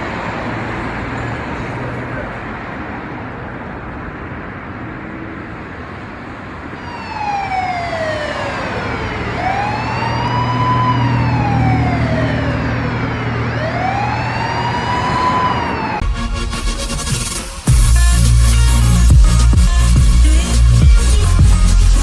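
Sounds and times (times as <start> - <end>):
road traffic noise: 0.0 - 22.0
emergency vehicle siren wailing: 6.6 - 16.8.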